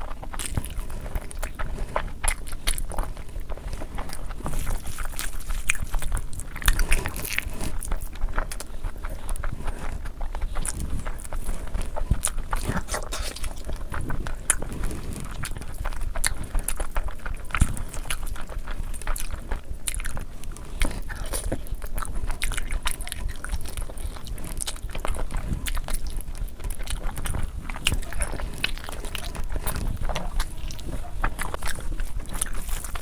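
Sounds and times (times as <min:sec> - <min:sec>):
person biting and chewing: 0:00.0 - 0:33.0
small mouth clicks: 0:00.0 - 0:33.0.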